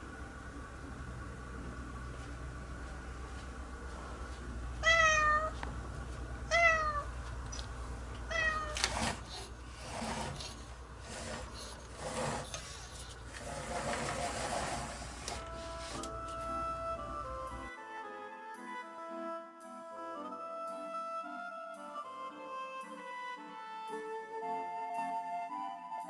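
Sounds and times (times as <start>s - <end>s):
cat meowing: 4.8s - 5.6s, 6.5s - 7.1s, 8.3s - 8.8s
scraping and rustling: 8.4s - 16.4s.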